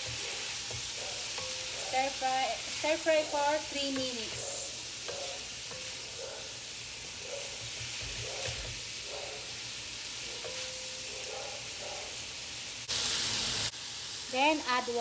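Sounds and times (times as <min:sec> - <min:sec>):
spatula stirring food: 0:00.0 - 0:12.8
food sizzling in a pan: 0:00.0 - 0:15.0.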